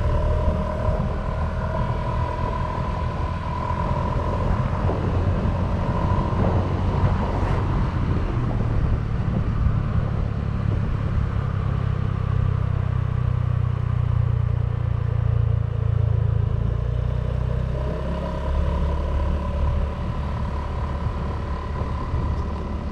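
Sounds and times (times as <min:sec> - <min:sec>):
scooter engine deep exhaust note: 0:00.0 - 0:07.2, 0:17.8 - 0:22.9.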